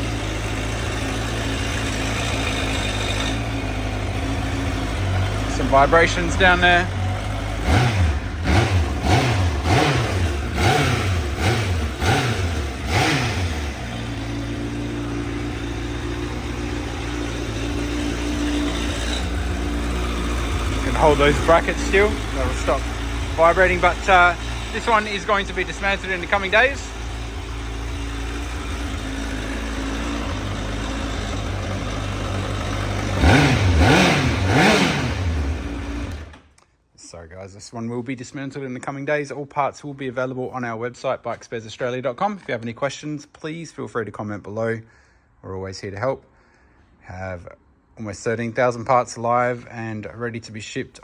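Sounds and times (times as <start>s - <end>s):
motorcycle engine revving and idling: 0.0s - 36.6s.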